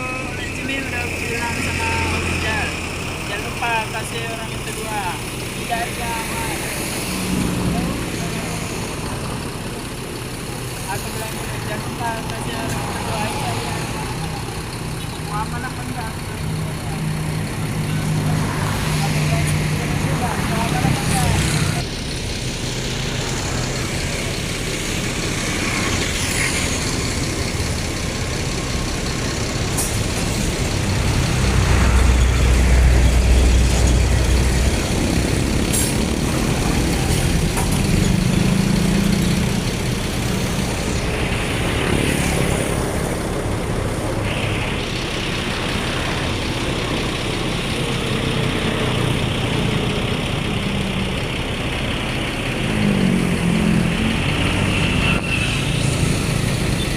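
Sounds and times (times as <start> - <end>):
heavy vehicle engine rumbling: 0.0 - 56.9.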